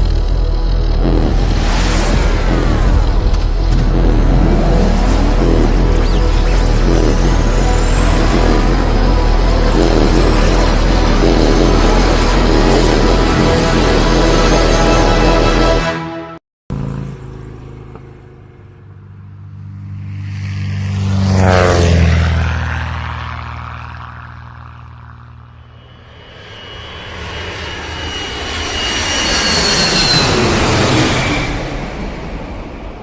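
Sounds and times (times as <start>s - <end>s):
aircraft flying past: 0.0s - 15.9s, 16.7s - 33.0s
high whine sliding down: 0.0s - 15.9s.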